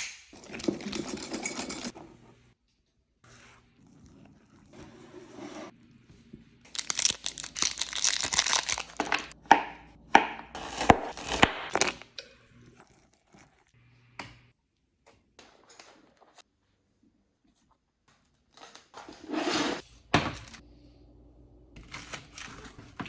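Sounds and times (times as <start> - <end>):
plastic wrappers crinkling: 6.7 - 9.4.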